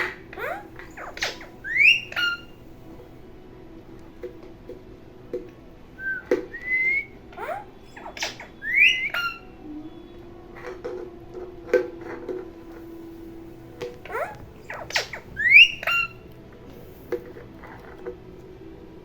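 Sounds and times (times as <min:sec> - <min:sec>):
parrot squeaky calls: 0:00.0 - 0:02.6, 0:06.0 - 0:09.6, 0:14.0 - 0:16.2
parrot whistling: 0:00.0 - 0:02.6, 0:06.0 - 0:10.7, 0:14.0 - 0:16.2.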